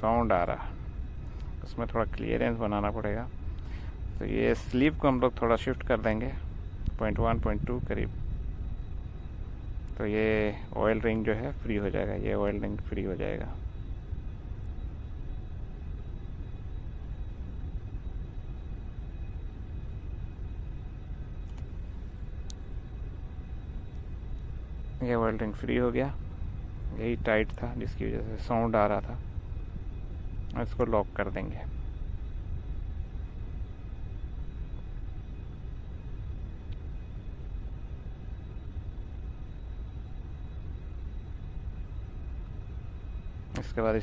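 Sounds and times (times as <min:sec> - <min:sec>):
low background rumble: 0:00.0 - 0:44.0
faint light clicks: 0:21.4 - 0:21.7.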